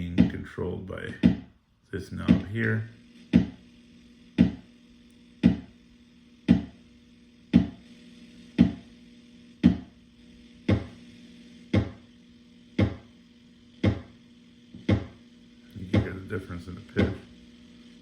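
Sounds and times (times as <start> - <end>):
electronic kick drum thumps: 0.0 - 0.5, 1.1 - 1.5, 2.1 - 2.6, 3.3 - 3.7, 4.3 - 4.7, 5.4 - 5.8, 6.4 - 6.9, 7.5 - 7.9, 8.5 - 9.0, 9.6 - 10.0, 10.6 - 12.1, 12.7 - 13.1, 13.8 - 15.2, 15.8 - 17.4.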